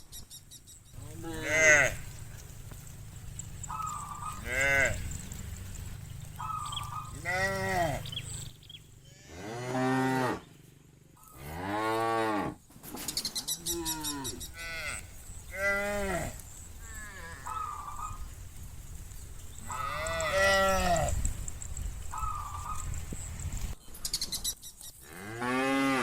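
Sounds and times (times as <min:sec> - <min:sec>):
cattle mooing: 0:01.0 - 0:10.5, 0:13.6 - 0:18.3, 0:19.6 - 0:21.2, 0:25.1 - 0:26.0.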